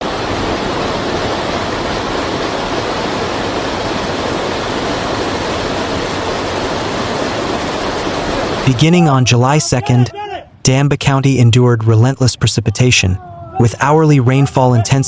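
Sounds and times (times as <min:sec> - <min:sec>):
rushing floodwater: 0:00.0 - 0:10.4.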